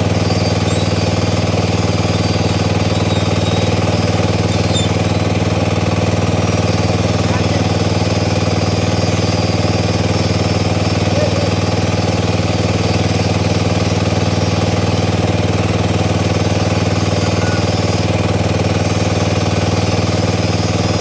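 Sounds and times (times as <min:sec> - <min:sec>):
fast even hammering pulse: 0:00.0 - 0:05.7
drilling rig engine running: 0:00.0 - 0:21.0.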